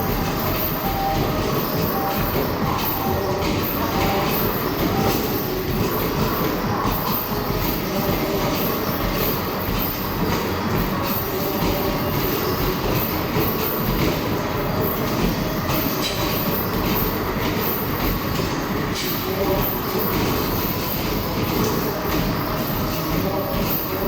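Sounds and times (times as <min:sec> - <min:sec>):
arcade din: 0:00.0 - 0:05.9.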